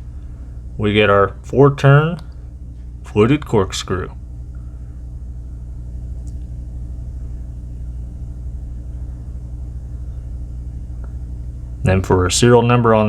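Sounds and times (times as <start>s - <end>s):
steady low tonal hum: 0.0s - 13.0s.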